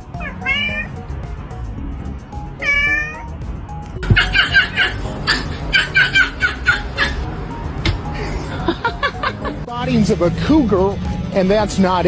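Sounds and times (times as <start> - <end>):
cat meowing: 0.0 - 1.0, 2.6 - 3.4
background music: 0.0 - 12.0.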